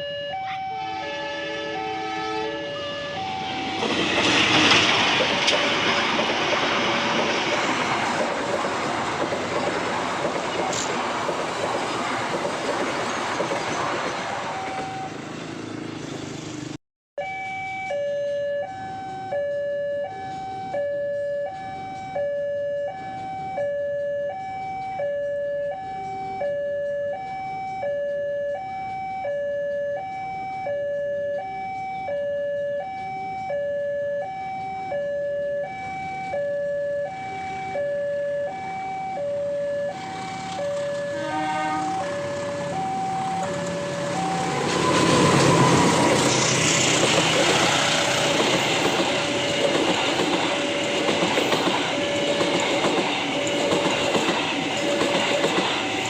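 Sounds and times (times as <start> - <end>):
two-tone crossing warning alarm: 0.0 - 16.5, 17.2 - 56.0
train running past: 0.5 - 16.8, 35.7 - 56.0.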